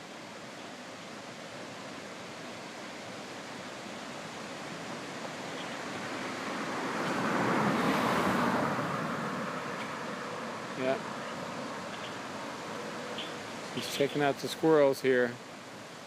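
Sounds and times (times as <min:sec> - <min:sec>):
outdoor rushing noise: 0:04.6 - 0:14.7.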